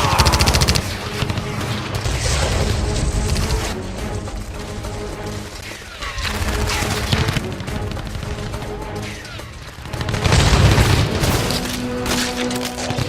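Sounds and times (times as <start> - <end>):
gunfire: 0.0 - 3.8, 4.5 - 13.0
music: 0.0 - 13.0.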